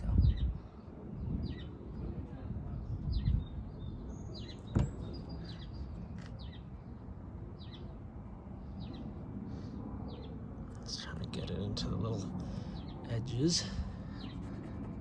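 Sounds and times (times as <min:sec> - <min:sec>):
small birds chirping: 0:03.0 - 0:08.0, 0:08.6 - 0:15.0.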